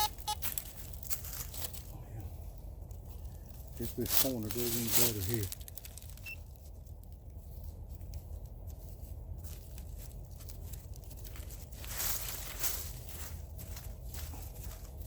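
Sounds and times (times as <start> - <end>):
low steady rumble: 0.0 - 15.0
scraping in leaf litter: 3.8 - 6.2, 9.4 - 15.0.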